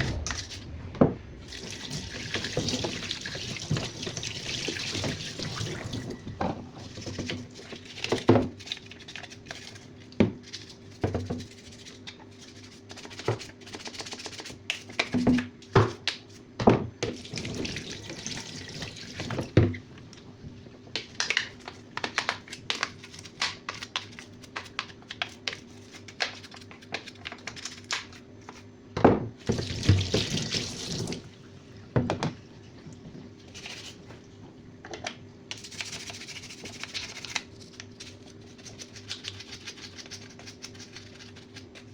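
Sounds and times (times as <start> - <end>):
tap water running and splashing: 0.2 - 9.6, 17.0 - 19.8, 29.4 - 33.2.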